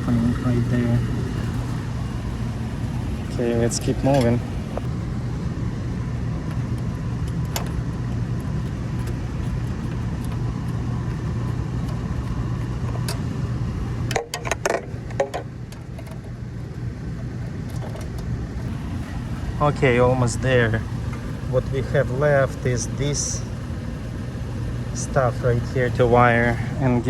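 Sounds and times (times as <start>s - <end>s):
low mechanical drone: 0.0s - 27.0s
metallic rattle of parts: 14.0s - 27.0s.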